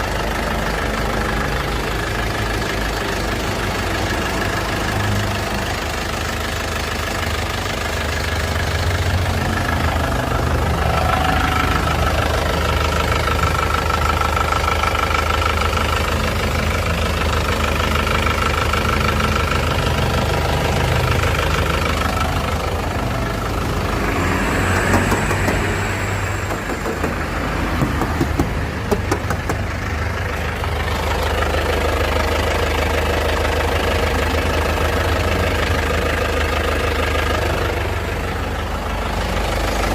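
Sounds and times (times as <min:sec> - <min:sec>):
diesel engine idling: 0:00.0 - 0:39.9.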